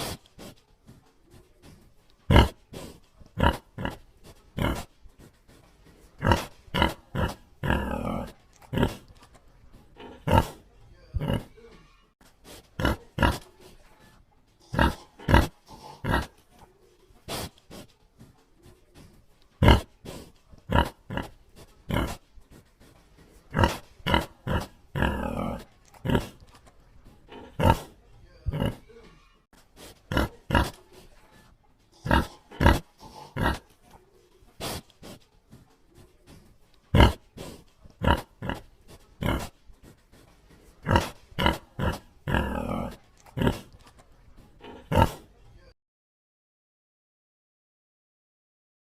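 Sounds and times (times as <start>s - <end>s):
pig grunting: 2.3s - 5.3s, 5.9s - 9.2s, 9.8s - 11.7s, 12.6s - 13.7s, 14.6s - 16.7s, 19.6s - 22.6s, 23.2s - 29.0s, 29.8s - 31.0s, 31.9s - 34.0s, 36.0s - 45.4s.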